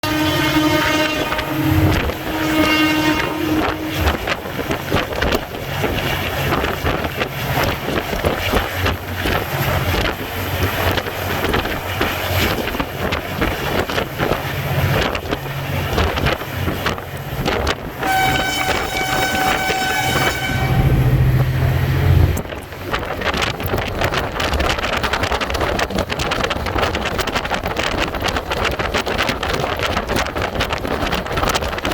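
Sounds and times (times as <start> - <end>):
locomotive horn: 0.0 - 5.4, 17.9 - 22.4
train rumble and wheel clatter: 0.0 - 31.9
wind on microphone: 0.0 - 31.9.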